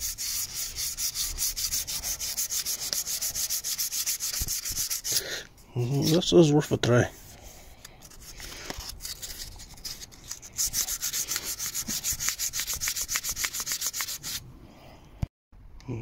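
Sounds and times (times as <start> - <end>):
sandpaper rubbing on metal wheel: 0.0 - 5.3, 7.0 - 14.4.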